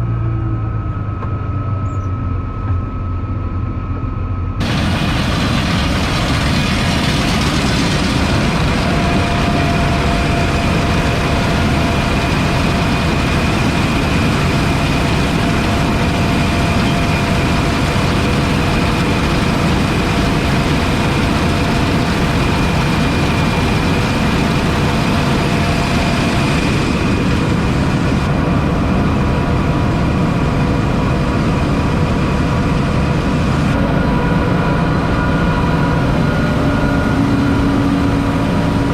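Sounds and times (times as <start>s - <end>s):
diesel machinery engine running: 0.0s - 38.9s.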